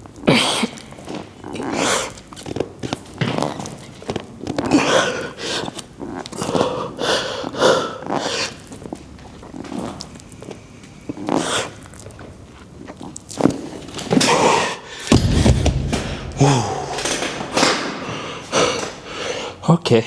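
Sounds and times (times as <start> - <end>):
man grunting and exhaling: 14.1 - 19.6.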